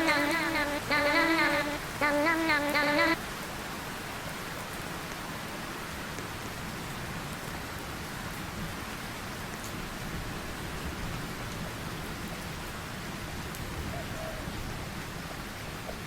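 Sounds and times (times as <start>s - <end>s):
short wavering melody: 0.0s - 3.2s
steady rain: 0.0s - 16.0s.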